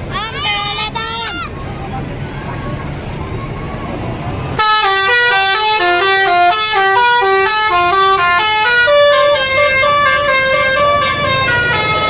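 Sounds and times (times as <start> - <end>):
bus air horn playing melody: 4.6 - 12.0.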